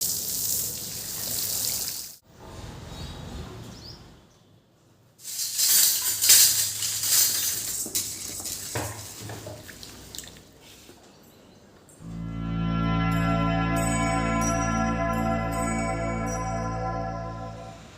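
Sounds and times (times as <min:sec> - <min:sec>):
water running from tap: 0:00.0 - 0:02.2.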